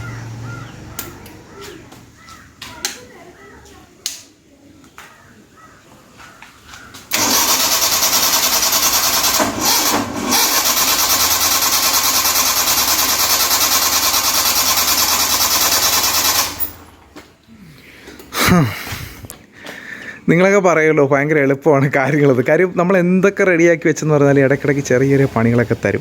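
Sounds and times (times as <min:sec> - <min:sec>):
starter motor cranking engine: 0:07.1 - 0:17.1.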